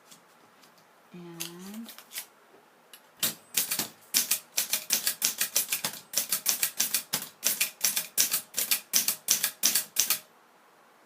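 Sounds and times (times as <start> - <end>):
typewriter key strikes: 3.2 - 10.2.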